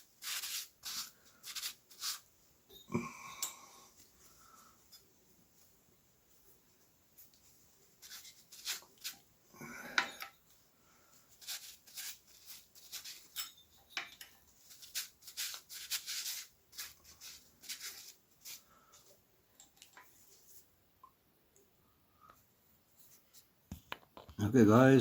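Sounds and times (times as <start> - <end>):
sandpaper scraping metal valve: 0.0 - 2.3, 11.4 - 13.6, 14.7 - 18.6.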